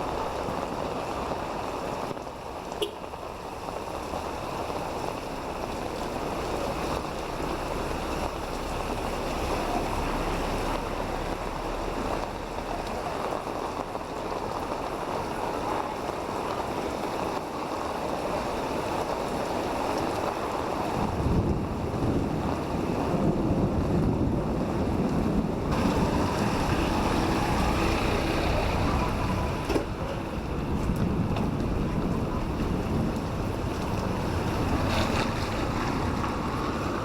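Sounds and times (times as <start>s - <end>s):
rain rushing: 0.0s - 37.0s
wind buffeting microphone: 18.2s - 37.0s.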